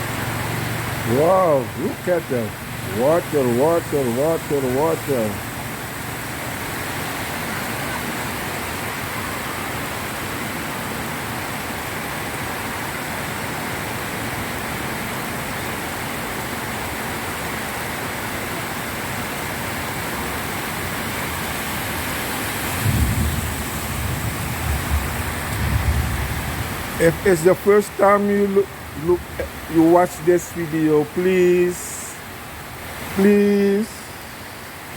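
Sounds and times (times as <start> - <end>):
heavy rain pouring: 0.0 - 34.9
low rumbling: 22.7 - 27.6.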